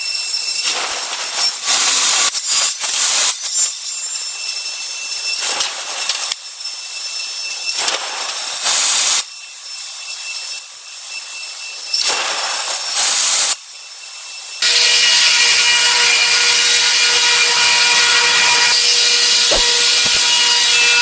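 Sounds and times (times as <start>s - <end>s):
power saw cutting wood: 0.0s - 9.3s, 14.4s - 21.0s
saw motor high whine: 14.4s - 21.0s.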